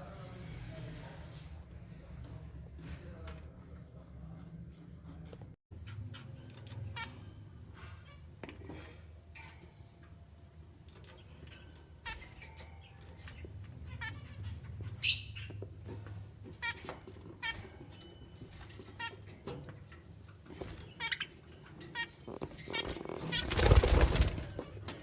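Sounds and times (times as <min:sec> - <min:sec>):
small birds chirping: 0:11.2 - 0:15.8.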